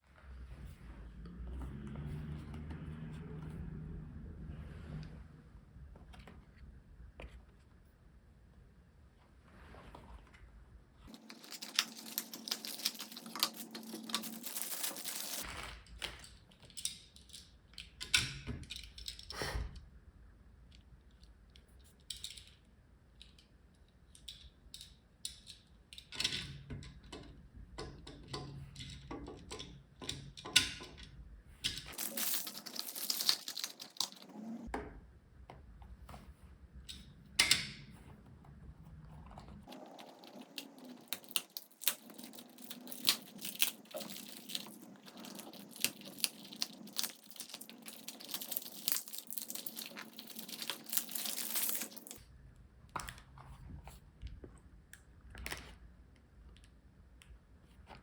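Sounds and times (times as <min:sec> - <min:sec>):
packaging tearing: 0:11.1 - 0:15.6, 0:31.9 - 0:34.5, 0:39.7 - 0:52.2
plastic packaging rustling: 0:11.1 - 0:15.7, 0:31.9 - 0:34.7, 0:39.6 - 0:52.2.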